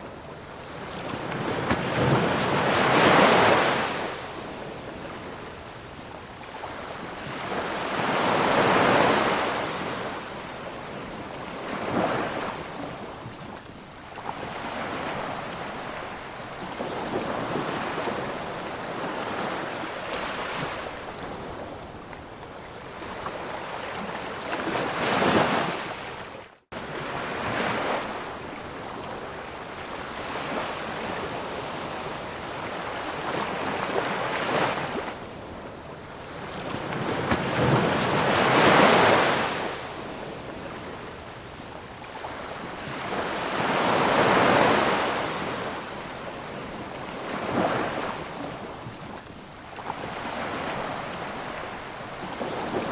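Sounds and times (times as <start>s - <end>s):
ocean waves breaking: 30.0s - 52.9s.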